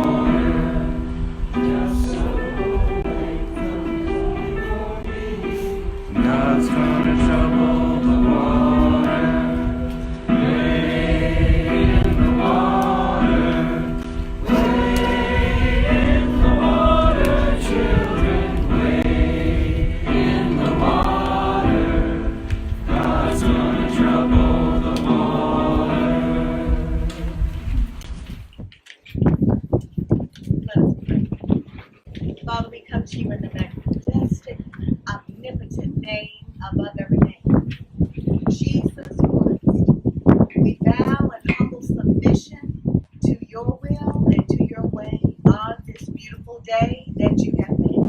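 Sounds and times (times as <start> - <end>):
group of people singing: 0.0 - 28.0.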